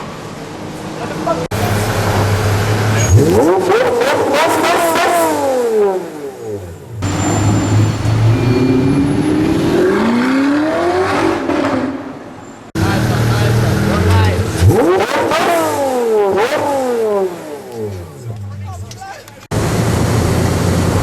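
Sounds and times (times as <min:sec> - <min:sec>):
car engine accelerating: 0:00.0 - 0:21.0
car engine running steadily: 0:12.8 - 0:21.0.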